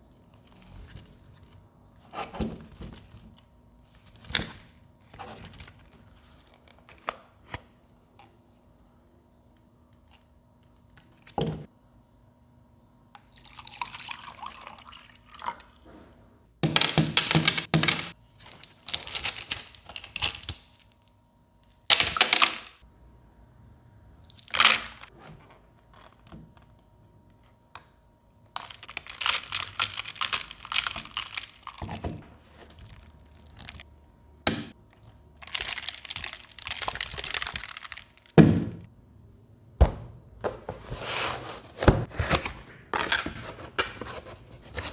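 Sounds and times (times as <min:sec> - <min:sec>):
packaging rustling and scraping: 0:40.6 - 0:44.9.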